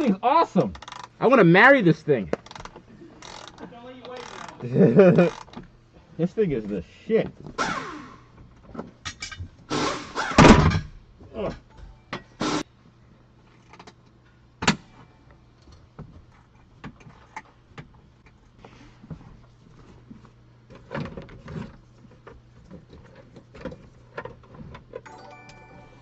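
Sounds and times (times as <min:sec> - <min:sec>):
tools and car parts clattering: 0:07.4 - 0:12.6.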